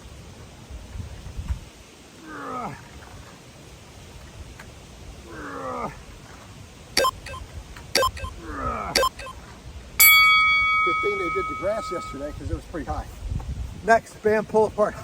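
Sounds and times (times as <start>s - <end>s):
sharp ringing beep: 7.0s - 7.4s, 8.0s - 8.4s, 9.0s - 9.4s, 10.0s - 12.4s.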